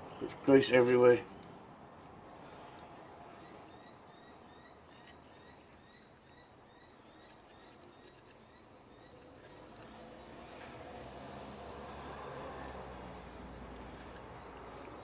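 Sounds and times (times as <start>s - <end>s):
small animal chirping: 3.4s - 10.4s.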